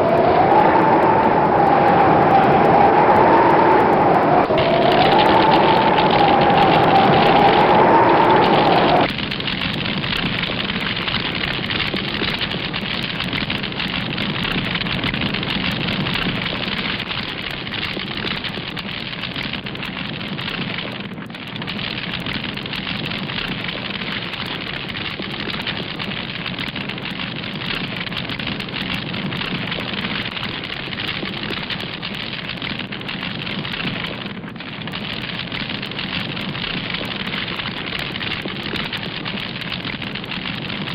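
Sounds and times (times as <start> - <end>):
wavering tone: 0.0 - 9.1
steady rushing hiss: 0.0 - 40.9.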